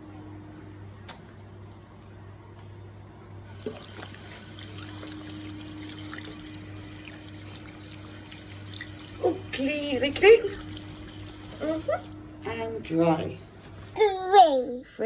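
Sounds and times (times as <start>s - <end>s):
tap water running into sink: 3.5s - 12.2s.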